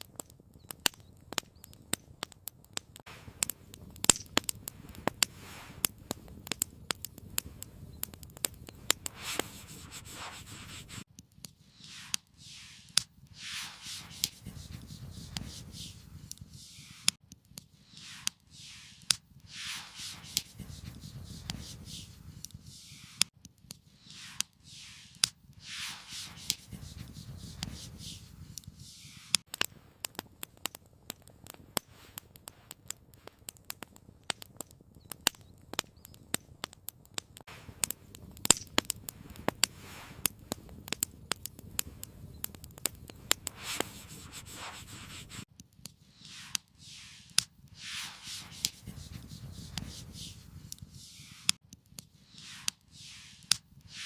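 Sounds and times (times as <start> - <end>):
campfire crackling and popping: 0.0 - 54.0
soft swishing rustles: 9.0 - 11.0, 11.8 - 17.2, 17.9 - 23.2, 24.1 - 29.4, 43.4 - 45.4, 46.3 - 51.5, 52.3 - 54.0.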